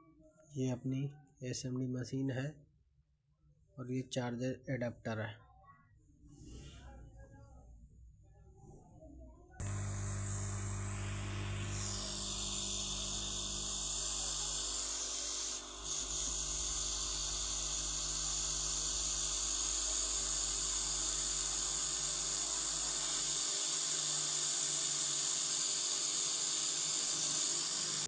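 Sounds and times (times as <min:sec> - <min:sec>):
hot-air station blowing air: 0:09.6 - 0:28.0.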